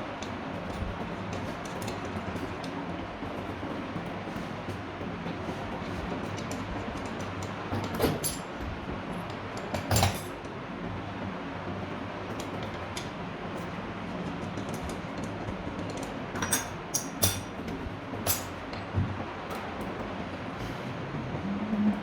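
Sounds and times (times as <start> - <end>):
steady low hum: 17.3 - 22.0.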